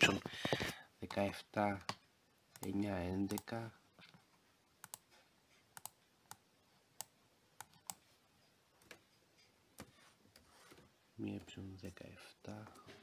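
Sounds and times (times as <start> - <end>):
computer mouse clicks: 2.6 - 3.5, 4.8 - 5.1, 5.7 - 6.4.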